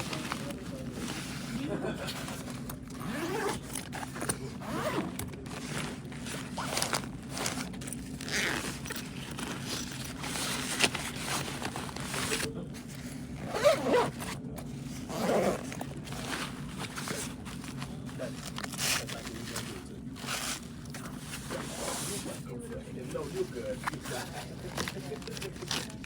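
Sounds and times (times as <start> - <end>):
bag scraping and rustling: 0.0 - 22.4, 23.0 - 26.0
steady low hum: 0.0 - 26.0
zipper being pulled: 2.3 - 12.5, 13.4 - 14.4, 15.0 - 19.1.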